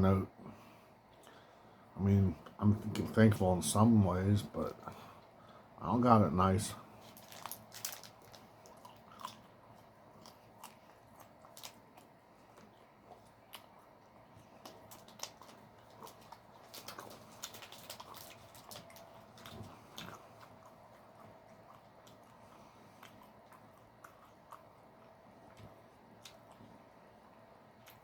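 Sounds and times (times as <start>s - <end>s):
faint steady hum: 0.0s - 28.0s
person chewing: 7.0s - 28.0s.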